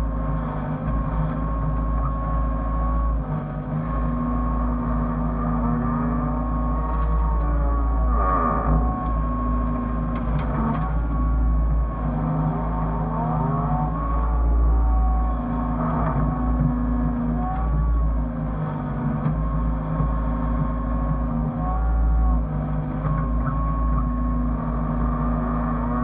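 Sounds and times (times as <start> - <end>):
excavator engine rumble: 0.0 - 26.0
whine rising and falling: 0.0 - 26.0.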